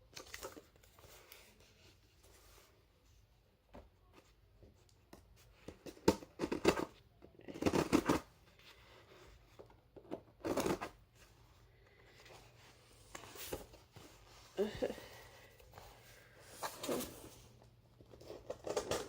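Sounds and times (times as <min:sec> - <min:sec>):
packaging rustling and scraping: 0:15.8 - 0:19.0.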